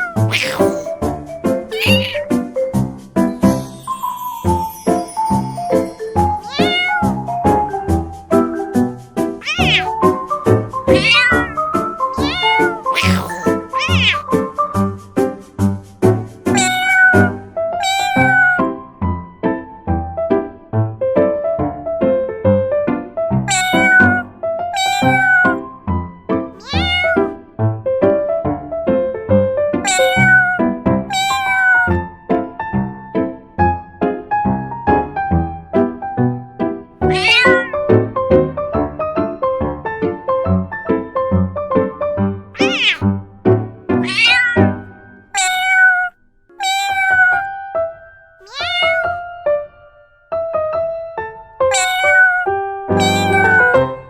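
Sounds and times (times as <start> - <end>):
cat meowing: 0.0 - 0.9, 1.7 - 2.2, 6.5 - 7.2, 9.4 - 10.0, 10.9 - 14.2, 16.5 - 18.7, 23.5 - 25.6, 26.6 - 27.3, 29.9 - 32.0, 37.0 - 37.9, 42.6 - 43.0, 44.0 - 44.8, 45.4 - 47.5, 48.4 - 49.2, 51.7 - 53.9.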